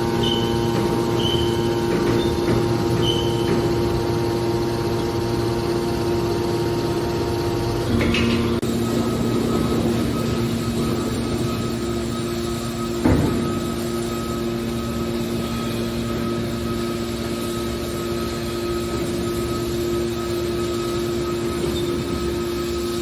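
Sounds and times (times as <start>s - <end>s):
machinery clunk: 0.0s - 5.4s, 7.8s - 16.4s
baling machinery humming: 0.0s - 23.0s.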